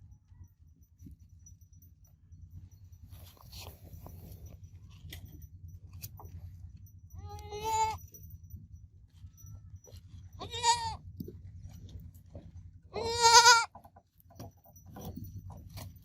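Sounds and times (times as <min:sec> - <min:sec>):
low steady hum: 0:00.0 - 0:16.0
goat kid bleating: 0:07.2 - 0:08.0, 0:10.4 - 0:11.0, 0:12.9 - 0:13.7.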